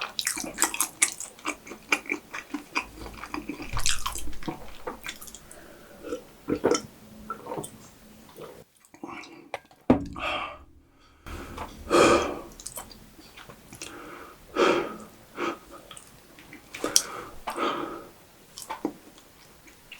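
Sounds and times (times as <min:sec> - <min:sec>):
chewing: 0:00.0 - 0:07.7
breathing: 0:05.2 - 0:06.5, 0:16.8 - 0:18.2.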